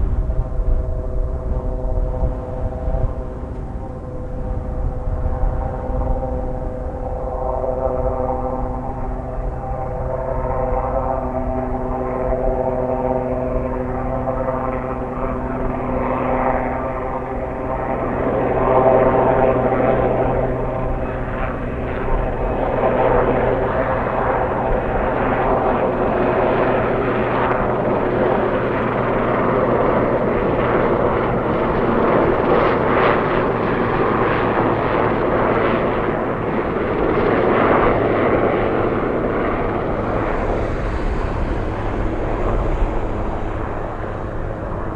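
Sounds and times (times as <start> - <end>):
helicopter engines and rotor drone: 0.0 - 44.9
rough rotor noise: 37.6 - 44.9
steady pitched tones: 38.1 - 44.9.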